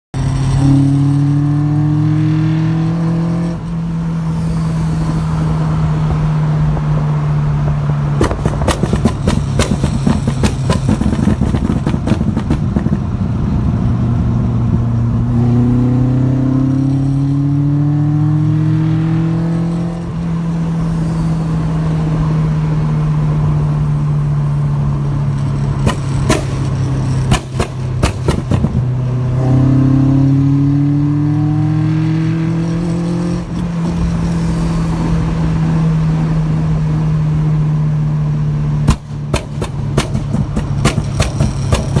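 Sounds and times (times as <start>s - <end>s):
engine revving: 0.2s - 6.8s, 13.8s - 22.4s, 25.4s - 36.8s
exhaust pops and bangs: 8.1s - 13.1s, 25.7s - 28.9s, 38.8s - 42.0s.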